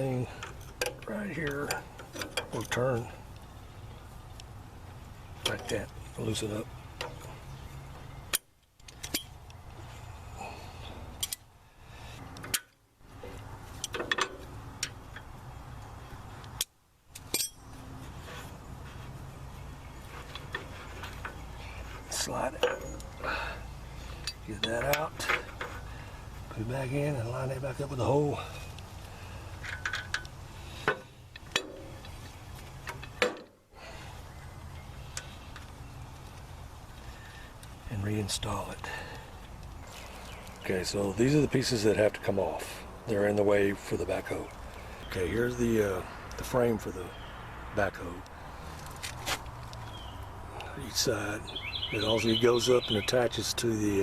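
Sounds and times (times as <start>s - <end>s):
metal bolt clinking: 0.4s - 2.8s, 8.3s - 9.4s, 13.8s - 15.3s, 17.1s - 17.8s, 22.5s - 23.2s, 29.6s - 30.3s
metallic clinks of tools: 17.2s - 17.7s.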